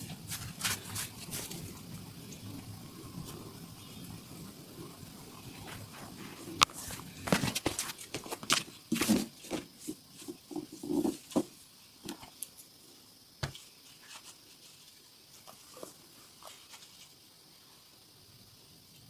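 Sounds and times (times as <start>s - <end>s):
massage slaps and pats: 6.6s - 11.5s, 13.4s - 14.3s.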